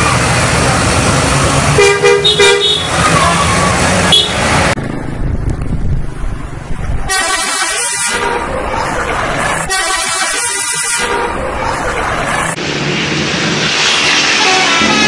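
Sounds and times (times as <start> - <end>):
multi-tone air horn blasts: 1.8 - 3.0, 7.1 - 8.5, 9.7 - 11.4, 14.3 - 15.0
low rumble: 4.7 - 7.1.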